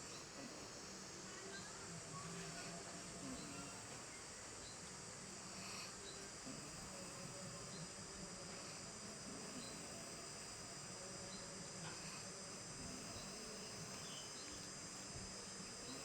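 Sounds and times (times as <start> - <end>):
insect chorus drone: 5.4 - 16.0.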